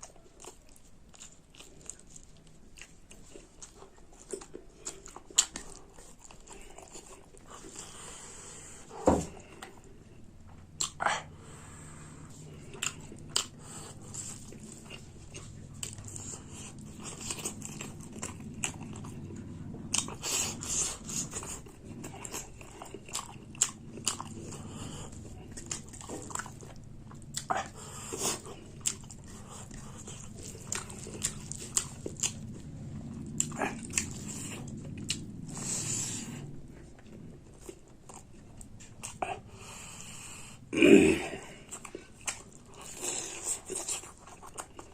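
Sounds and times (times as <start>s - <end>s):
person chewing food: 0.0s - 44.9s.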